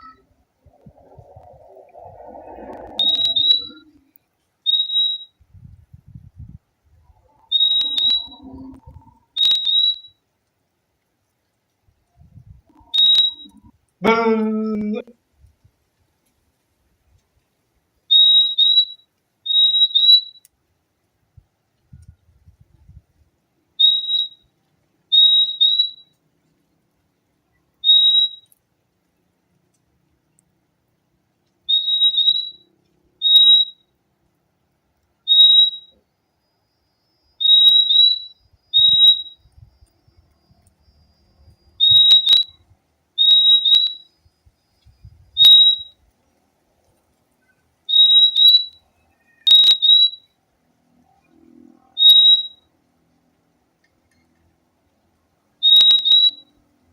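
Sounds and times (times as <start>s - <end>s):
bird whistled calls: 1.6s - 4.0s, 4.7s - 5.4s, 7.2s - 10.1s, 12.8s - 13.6s, 18.1s - 20.4s, 23.8s - 24.4s, 25.1s - 26.1s, 27.8s - 28.5s, 31.7s - 33.8s, 35.3s - 36.0s, 37.0s - 39.4s, 40.4s - 42.6s, 43.2s - 46.0s, 47.4s - 50.3s, 51.8s - 52.6s, 55.6s - 56.5s
sharp clicks: 41.8s - 42.5s.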